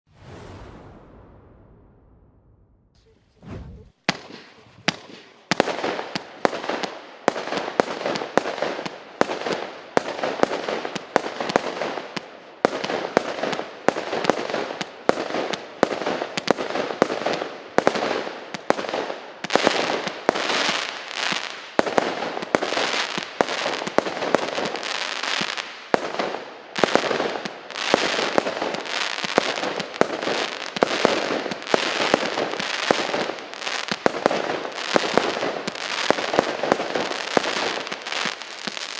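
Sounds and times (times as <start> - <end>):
firework cake firing: 3.0 - 9.4, 26.8 - 38.9.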